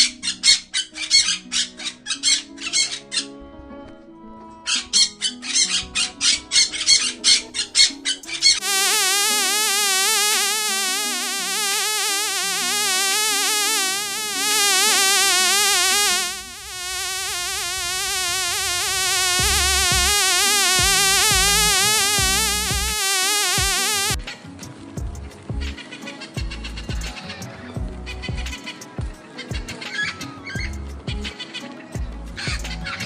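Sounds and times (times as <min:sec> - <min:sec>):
warbling buzz: 0:08.6 - 0:24.2.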